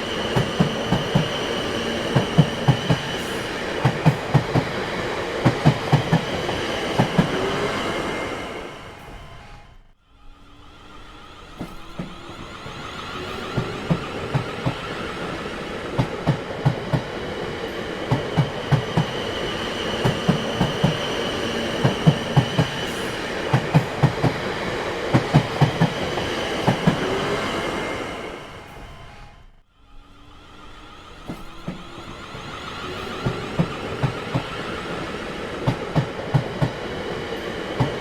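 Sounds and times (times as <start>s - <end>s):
high whine of wheels on rails: 0.0s - 38.0s
train rumble: 0.0s - 38.0s
train wheels clacking over rail joints: 18.0s - 27.2s.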